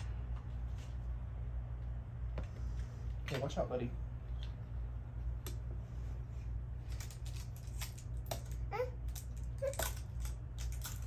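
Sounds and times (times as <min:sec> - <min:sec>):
steady low hum: 0:00.0 - 0:11.0
clicks and rustles of packaging: 0:06.9 - 0:11.0
toddler babbling: 0:08.7 - 0:09.0, 0:09.6 - 0:10.0.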